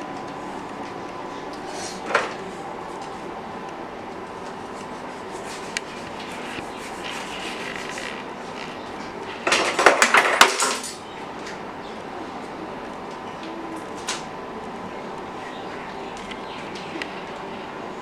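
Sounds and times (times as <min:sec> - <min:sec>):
background hiss: 0:00.0 - 0:18.0
dishes and cutlery clattering: 0:09.3 - 0:11.0.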